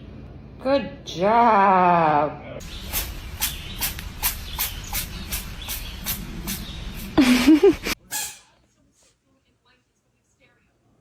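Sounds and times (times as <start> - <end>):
cat sneezing: 7.9 - 8.5.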